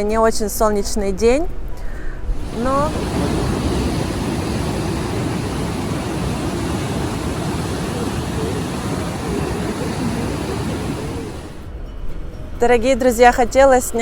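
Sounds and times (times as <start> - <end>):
wind buffeting microphone: 2.3 - 11.7.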